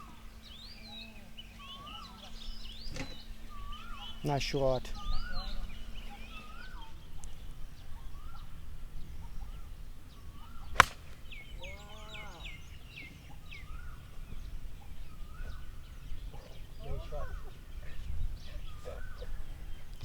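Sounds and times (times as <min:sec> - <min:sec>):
birds chirping: 0:00.0 - 0:20.0
golf club striking ball: 0:10.6 - 0:11.5.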